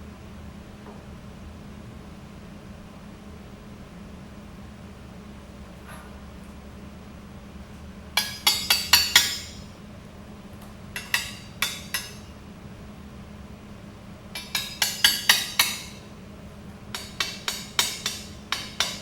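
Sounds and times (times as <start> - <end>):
hammer striking steel plate: 8.2 - 9.7, 11.0 - 12.2, 14.4 - 16.1, 17.0 - 19.0.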